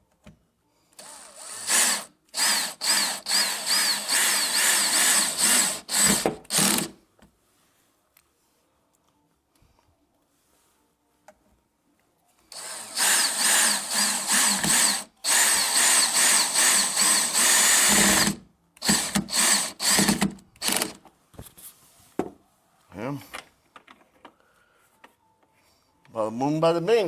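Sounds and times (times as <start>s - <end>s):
power drill driving a screw: 1.0s - 7.0s, 12.5s - 21.0s.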